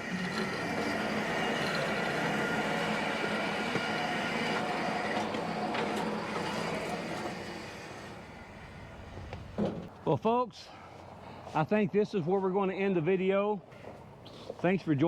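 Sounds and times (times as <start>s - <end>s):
bandsaw sawmill running: 0.0s - 9.0s.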